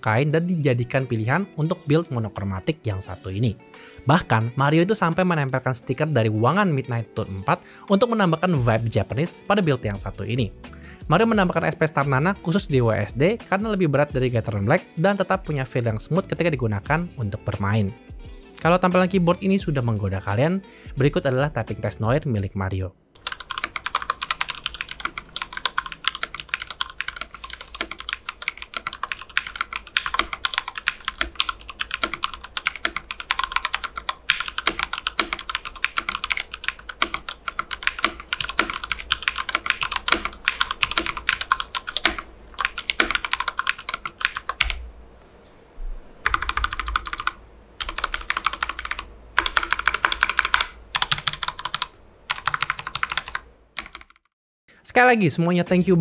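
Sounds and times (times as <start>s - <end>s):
mechanical keyboard typing: 23.2s - 44.8s, 46.2s - 54.3s.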